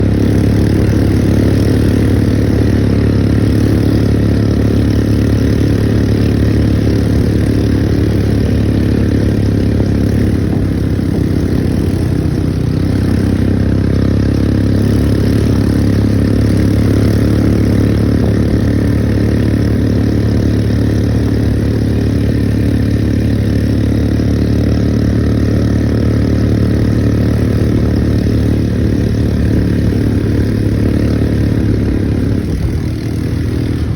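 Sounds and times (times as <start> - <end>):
atv engine running: 0.0 - 33.9.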